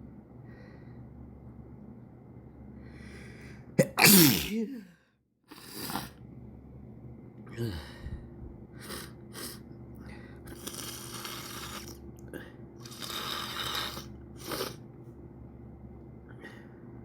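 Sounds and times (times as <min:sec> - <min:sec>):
noisy breathing through nose: 0:08.0 - 0:14.8.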